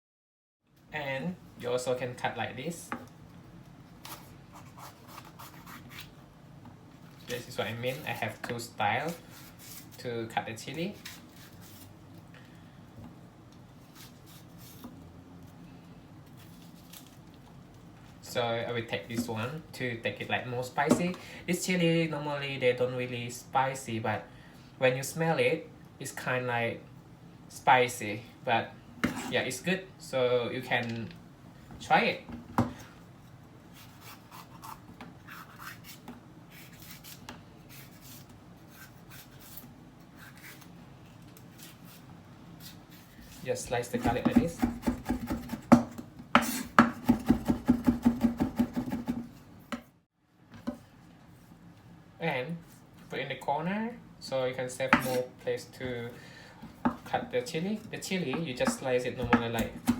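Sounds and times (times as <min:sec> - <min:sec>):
knife scraping on cutting board: 0:04.0 - 0:06.1, 0:09.1 - 0:10.0, 0:29.0 - 0:29.4, 0:33.7 - 0:40.7, 0:46.3 - 0:47.4, 0:55.0 - 0:55.3.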